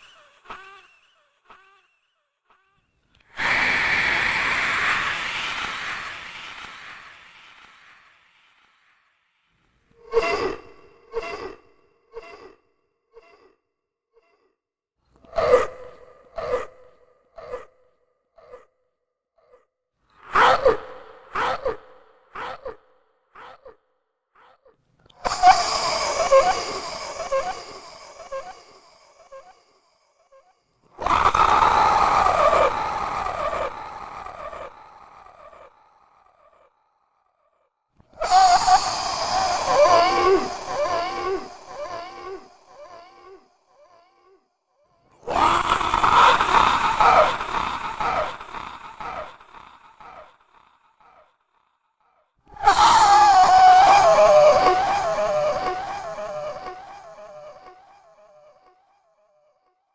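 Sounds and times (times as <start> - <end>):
harsh roar-like vocal effect: 30.9 - 36.2, 38.1 - 43.5, 45.2 - 50.4, 52.5 - 58.4.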